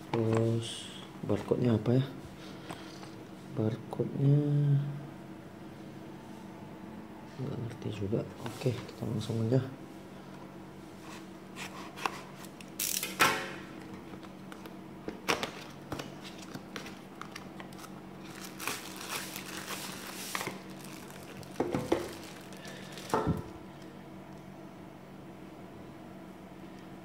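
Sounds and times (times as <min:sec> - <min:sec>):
packaging rustling and crinkling: 0:15.2 - 0:23.6.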